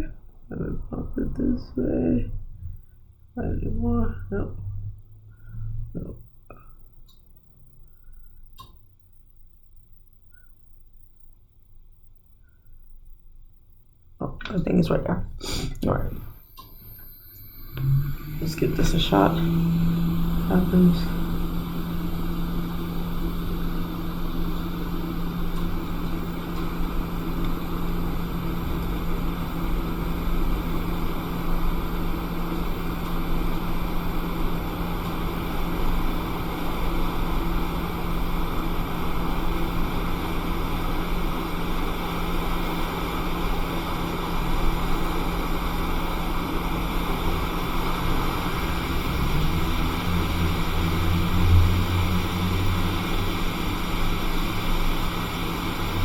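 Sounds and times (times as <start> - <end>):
constant fan hum: 0.0 - 6.7, 14.2 - 56.0
deep rumble: 0.0 - 6.7, 17.5 - 56.0
hot air station rush of air: 15.4 - 15.8, 17.7 - 56.0.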